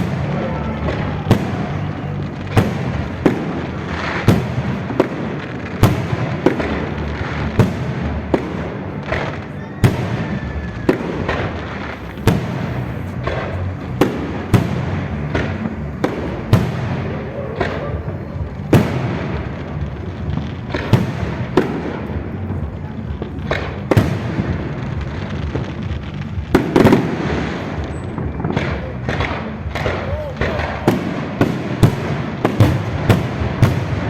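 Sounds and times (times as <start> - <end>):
fireworks bangs: 0.0 - 34.0
steady low rumble: 10.6 - 34.0.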